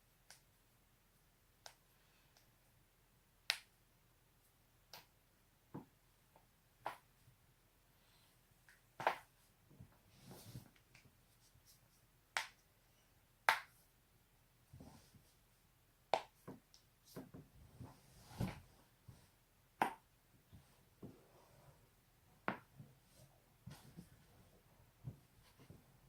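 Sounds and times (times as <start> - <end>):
soft movement sounds: 9.1 - 12.1, 14.6 - 15.6, 16.4 - 19.4, 20.4 - 26.0.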